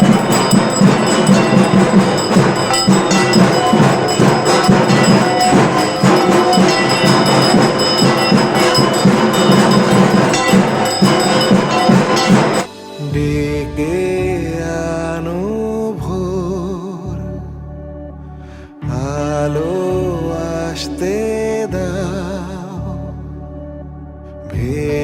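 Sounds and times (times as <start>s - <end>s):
bell-metal ringing: 0.0s - 12.7s
drums beaten in fast rhythm: 0.0s - 12.7s.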